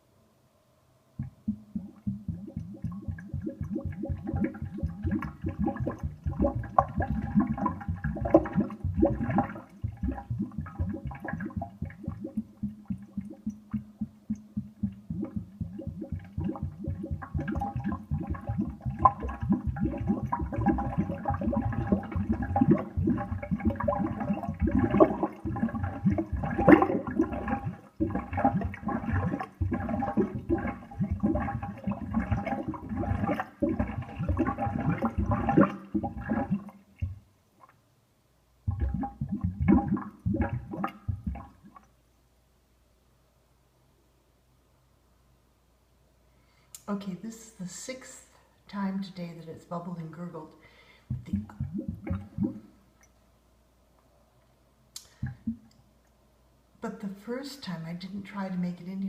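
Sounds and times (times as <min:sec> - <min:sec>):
sink drain gurgling and bubbling: 0:01.2 - 0:37.8, 0:38.6 - 0:41.9, 0:51.1 - 0:53.1, 0:55.1 - 0:55.8.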